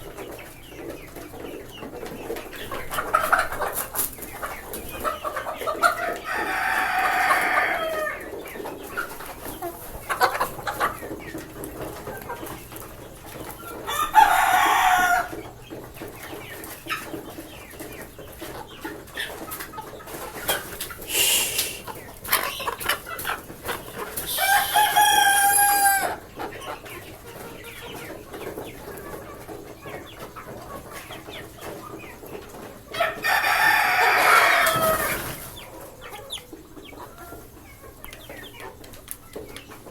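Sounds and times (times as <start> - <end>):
chickens clucking: 0.0 - 39.9
roosters crowing: 5.1 - 8.3, 13.6 - 15.5, 21.0 - 22.8, 23.6 - 26.4, 32.9 - 36.3.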